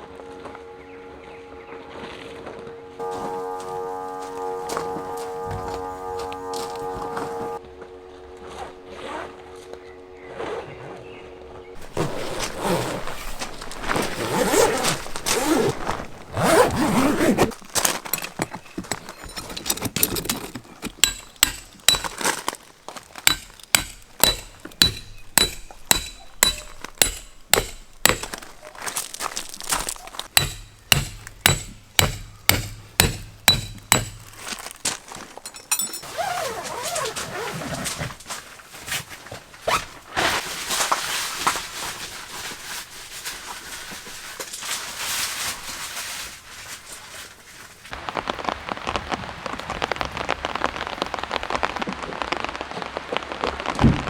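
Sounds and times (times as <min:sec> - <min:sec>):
scraping and rubbing: 0:11.8 - 0:34.8
sharp metallic knocks: 0:19.0 - 0:22.3, 0:23.2 - 0:28.6, 0:30.3 - 0:34.6.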